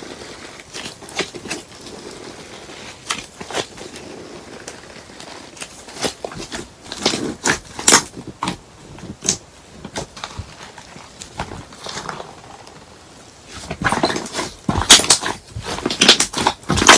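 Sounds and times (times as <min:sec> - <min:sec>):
slime squished by hand: 0:13.5 - 0:16.9.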